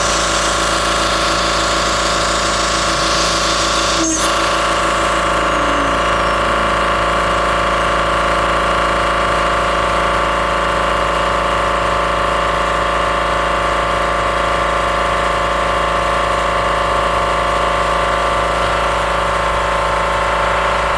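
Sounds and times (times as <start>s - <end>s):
router spindle whine: 0.0s - 11.4s.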